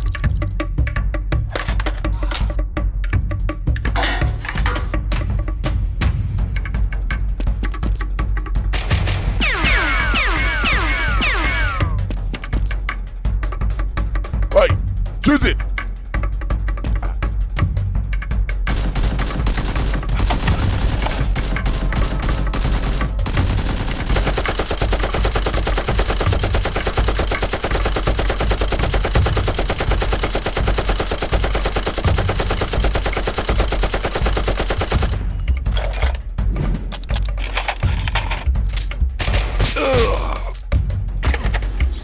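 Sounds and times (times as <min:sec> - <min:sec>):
background music: 0:00.0 - 0:42.0
automatic gunfire: 0:18.7 - 0:35.3.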